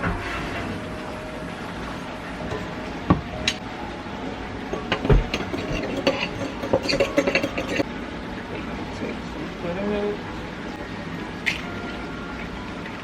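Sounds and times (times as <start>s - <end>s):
utensils and dishes clinking: 2.4s - 3.6s, 4.5s - 7.9s.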